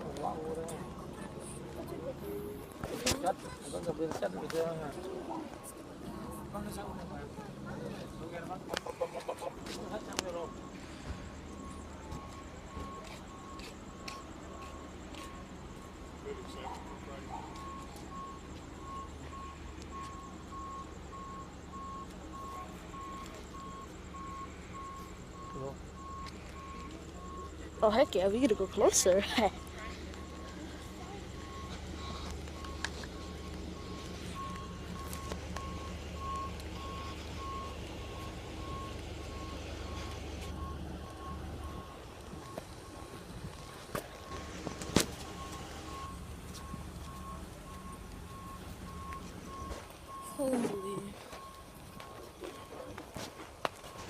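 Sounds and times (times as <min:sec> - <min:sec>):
large vehicle engine hum: 0:00.0 - 0:54.0
repeating high warning beep: 0:09.9 - 0:52.9.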